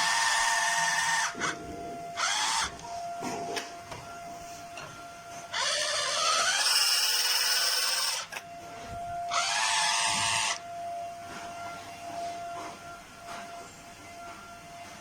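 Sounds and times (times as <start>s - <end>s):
toy drill electronic whirring: 0.0s - 1.6s, 2.2s - 3.7s, 5.5s - 8.4s, 9.3s - 10.6s.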